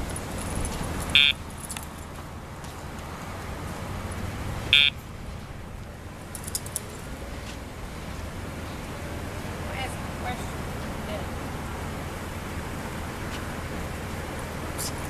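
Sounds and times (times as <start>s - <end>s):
light metallic jingles: 0.0s - 2.2s, 5.0s - 7.2s
low outdoor rumble: 0.0s - 15.0s
short electronic beeps: 1.2s - 1.4s, 4.8s - 5.0s.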